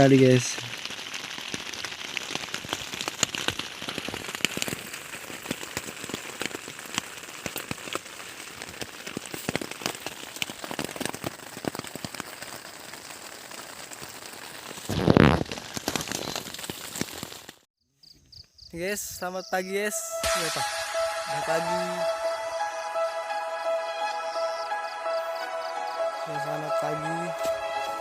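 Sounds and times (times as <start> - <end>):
drizzle with drops ticking: 0.0 - 17.4.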